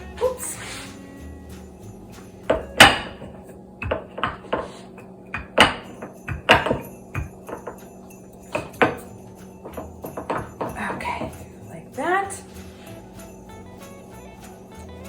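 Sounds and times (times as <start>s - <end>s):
rolling pin knocking on surface: 3.8s - 4.7s, 5.3s - 7.8s.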